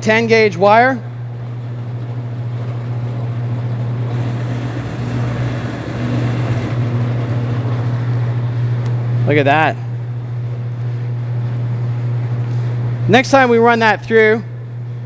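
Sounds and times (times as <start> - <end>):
wire stripping machine humming: 0.0 - 15.0.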